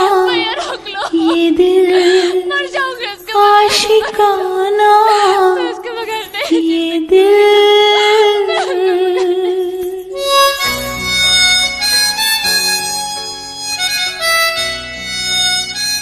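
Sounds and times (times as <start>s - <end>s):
instrumental ringtone music: 10.1s - 16.0s.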